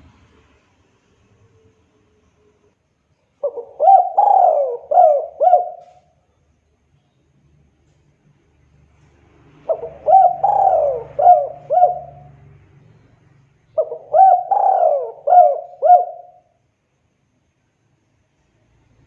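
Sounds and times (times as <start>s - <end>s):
dove cooing: 3.4s - 6.1s, 9.6s - 12.4s, 13.8s - 16.5s.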